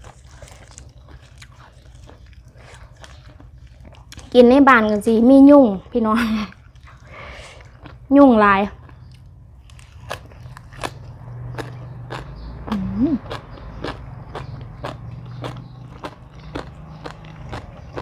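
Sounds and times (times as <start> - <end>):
person chewing food: 0.0 - 4.4, 6.3 - 8.1, 8.7 - 18.0
person humming mm: 12.7 - 13.2.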